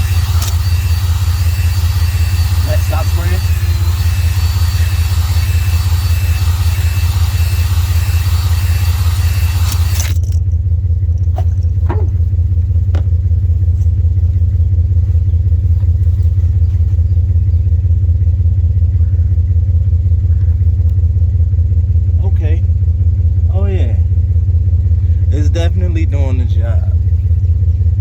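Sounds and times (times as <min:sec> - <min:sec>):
cylinder hone scraping in bore: 0:00.0 - 0:16.6
steady low hum: 0:00.0 - 0:28.0.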